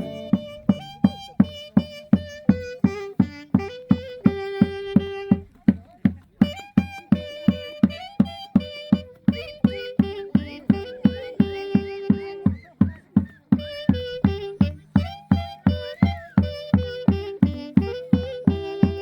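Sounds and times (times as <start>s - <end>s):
high melody line: 0.0s - 1.6s
drum struck steadily: 0.0s - 19.0s.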